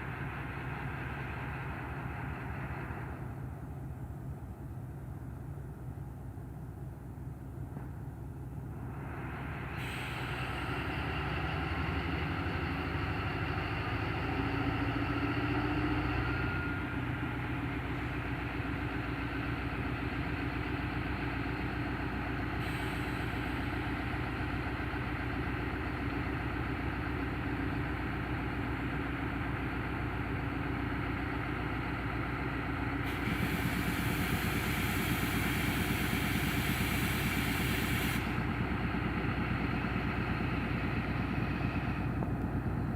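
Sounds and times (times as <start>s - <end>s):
diesel locomotive engine running: 0.0s - 42.9s
hiss: 9.0s - 10.9s, 22.5s - 24.4s, 33.0s - 38.7s.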